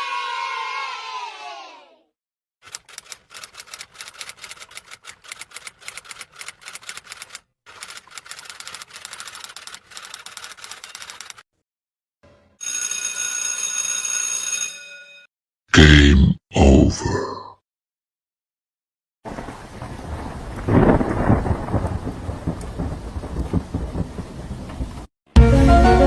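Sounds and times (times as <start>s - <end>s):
crowd cheering: 0.0s - 2.0s
rapid typing clicks: 2.6s - 11.4s.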